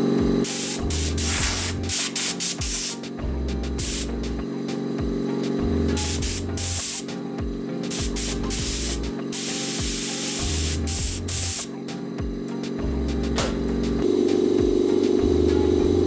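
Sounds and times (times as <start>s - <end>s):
background music: 0.0s - 16.0s
hissing spray bursts: 0.4s - 7.2s, 7.8s - 12.0s.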